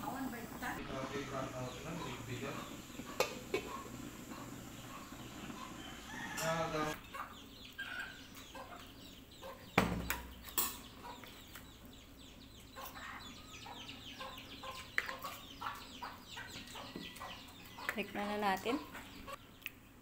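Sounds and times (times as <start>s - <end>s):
birds chirping: 0.0s - 20.0s.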